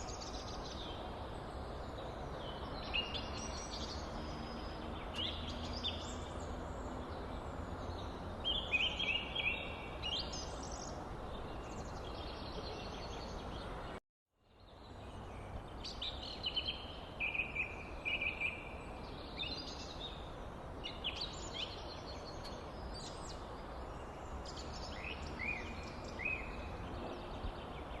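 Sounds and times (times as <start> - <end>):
small birds chirping: 0.0 - 28.0.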